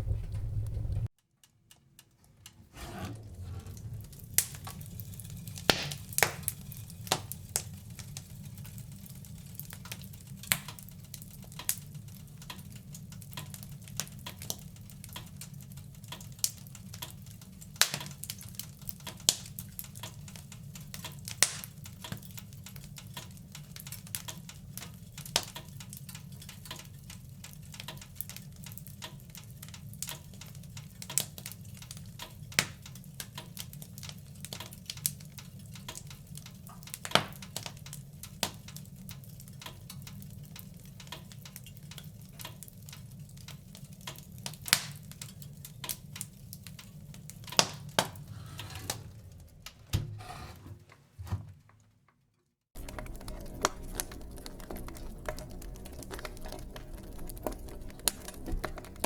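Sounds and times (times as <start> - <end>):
low rumble of flames: 0.0 - 1.1, 2.5 - 22.0, 52.8 - 59.0
wood fire crackling and popping: 0.0 - 48.3, 52.8 - 59.0.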